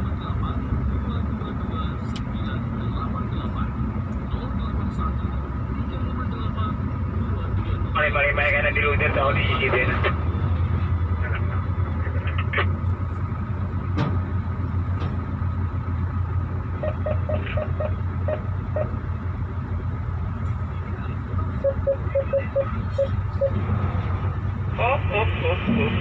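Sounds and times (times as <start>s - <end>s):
diesel truck engine running: 0.0s - 26.0s
short beeps: 16.8s - 18.9s, 21.6s - 23.6s.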